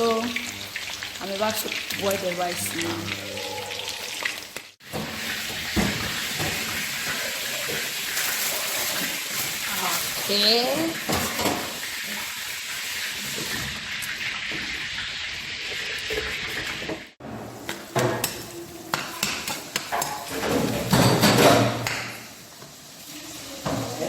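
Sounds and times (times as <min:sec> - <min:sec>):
steady cooking hiss: 0:00.0 - 0:24.0
pot and utensils clattering: 0:04.8 - 0:12.3, 0:15.6 - 0:22.2.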